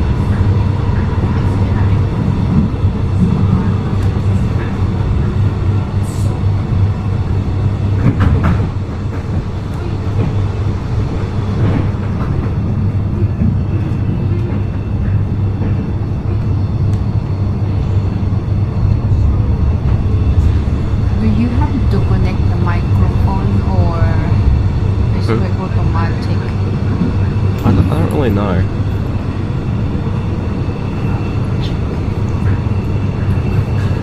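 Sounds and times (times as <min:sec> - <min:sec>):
train rumbling on rails: 0:00.0 - 0:34.0.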